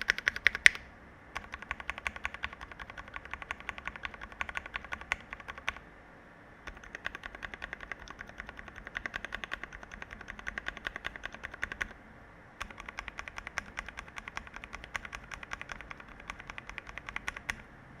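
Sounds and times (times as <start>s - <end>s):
fast typing on a keyboard: 0.0s - 0.8s, 1.4s - 5.8s, 6.7s - 11.9s, 12.6s - 17.7s.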